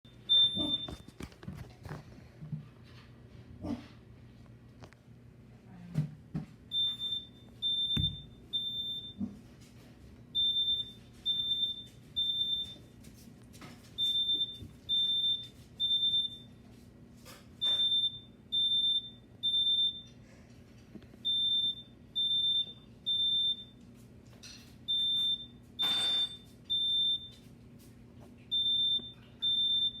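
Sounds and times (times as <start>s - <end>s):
smoke alarm beeping: 0.0s - 1.2s, 6.7s - 9.2s, 10.3s - 13.0s, 14.0s - 16.6s, 17.6s - 20.2s, 21.2s - 23.8s, 24.9s - 27.5s, 28.5s - 30.0s.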